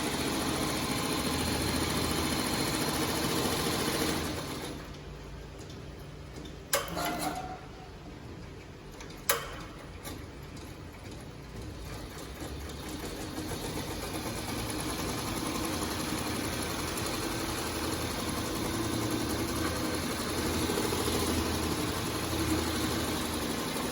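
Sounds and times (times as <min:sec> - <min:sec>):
embroidery machine running: 0:00.0 - 0:05.0, 0:11.1 - 0:23.9.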